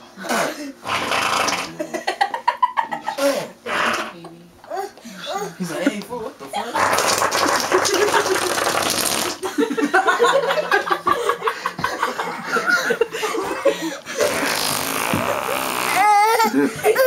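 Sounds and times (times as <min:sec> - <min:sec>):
person making fart noises: 0:00.2 - 0:01.8, 0:03.2 - 0:04.2, 0:06.8 - 0:09.4, 0:14.2 - 0:16.5
laughter: 0:01.7 - 0:03.4, 0:07.5 - 0:08.8, 0:09.4 - 0:14.0, 0:16.4 - 0:17.0.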